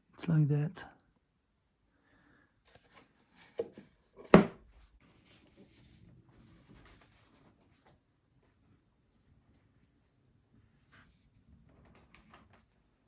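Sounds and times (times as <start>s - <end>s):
knocks on foam plane: 4.3s - 4.6s
soft rubbing and rustling: 5.0s - 13.0s.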